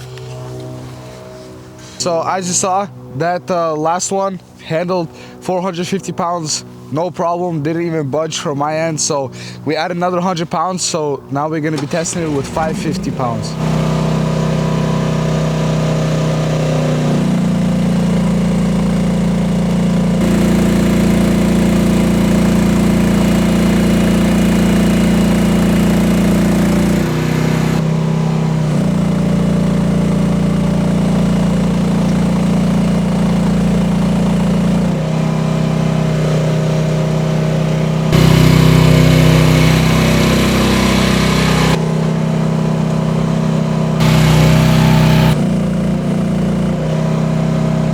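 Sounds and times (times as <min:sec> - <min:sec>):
mini excavator engine under load: 0:11.8 - 0:47.8.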